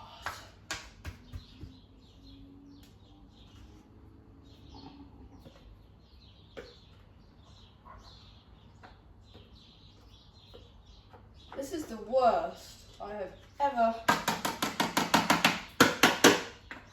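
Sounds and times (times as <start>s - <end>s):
birds chirping faintly: 0.0s - 16.9s.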